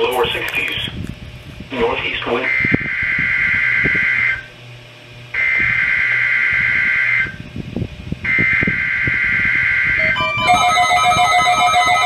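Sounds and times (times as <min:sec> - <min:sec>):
buzzing two-tone data warble: 0:02.4 - 0:04.5, 0:05.3 - 0:07.4, 0:08.3 - 0:12.0.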